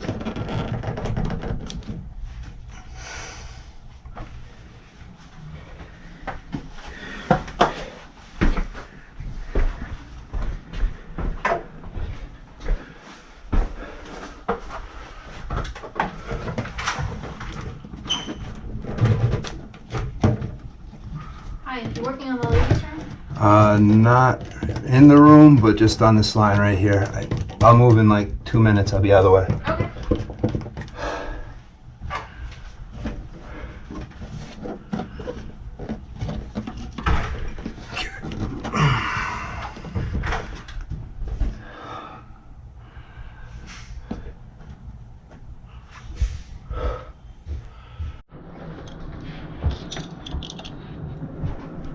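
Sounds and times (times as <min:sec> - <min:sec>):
tools and parts knocking and rattling: 0:15.5 - 0:25.6, 0:26.5 - 0:31.0, 0:33.9 - 0:38.8, 0:48.7 - 0:51.2.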